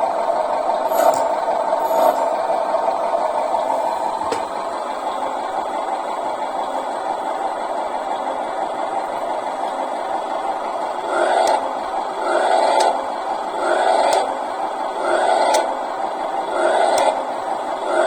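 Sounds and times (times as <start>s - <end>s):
engine idling: 0.0s - 18.0s
click: 11.4s - 11.6s, 12.8s - 13.0s.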